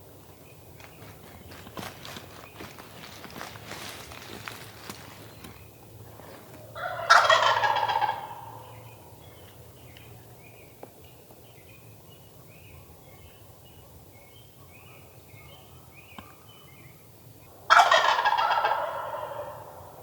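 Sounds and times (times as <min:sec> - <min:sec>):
turkey gobbling: 0:06.7 - 0:09.2, 0:17.7 - 0:20.0.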